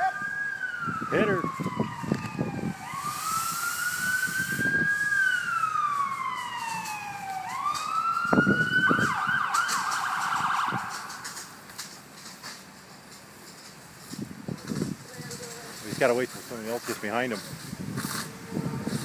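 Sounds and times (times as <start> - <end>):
emergency siren wailing and yelping: 0.0 - 11.6.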